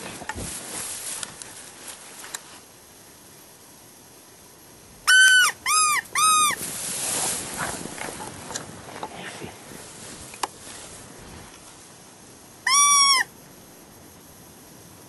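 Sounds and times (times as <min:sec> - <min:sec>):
wind noise: 0:00.0 - 0:01.9, 0:04.9 - 0:11.9
coyote howler call: 0:05.0 - 0:06.6, 0:12.6 - 0:13.4.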